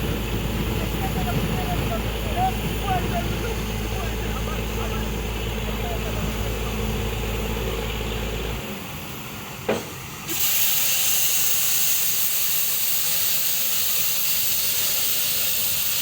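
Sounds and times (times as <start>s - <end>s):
low hum: 0.0s - 9.3s
single knock: 9.7s - 10.0s
gas hissing under pressure: 9.7s - 16.0s.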